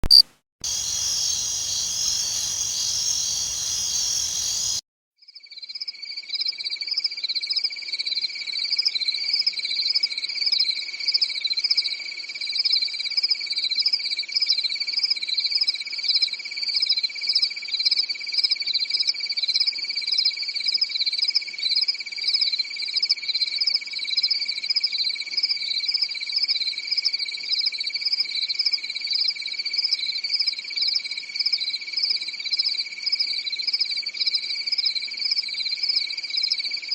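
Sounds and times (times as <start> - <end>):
crickets chirping: 0.1 - 4.8.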